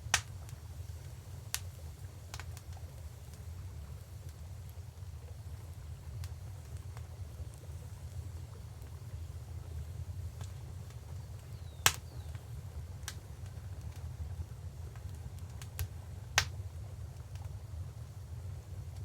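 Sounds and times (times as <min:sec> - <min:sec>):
fire pops: 0:00.0 - 0:18.0
wood fire crackling: 0:00.0 - 0:19.0.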